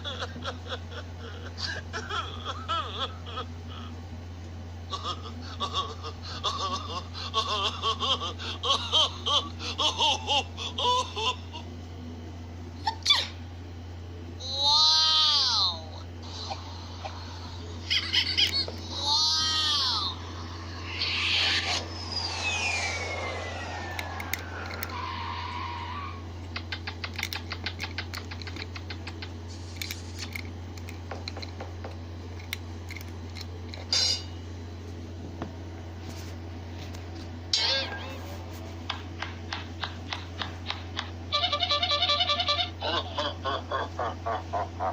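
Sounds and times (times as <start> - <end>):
high-pitched laughter: 0.0 - 3.9, 4.9 - 11.7, 16.2 - 25.0, 41.3 - 44.9
steady low hum: 0.0 - 41.4
rapid sharp clicking: 26.5 - 29.3.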